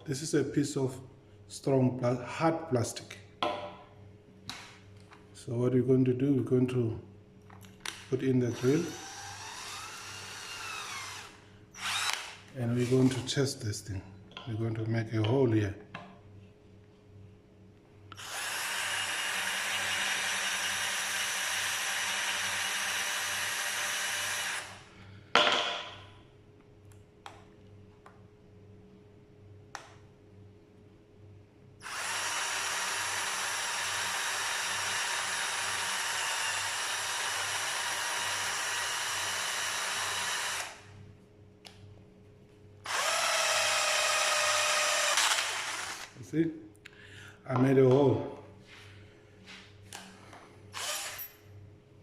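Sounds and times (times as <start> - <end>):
cordless drill drilling plastic: 8.5 - 13.2, 18.2 - 24.8, 31.8 - 40.8, 42.9 - 46.1, 50.8 - 51.3.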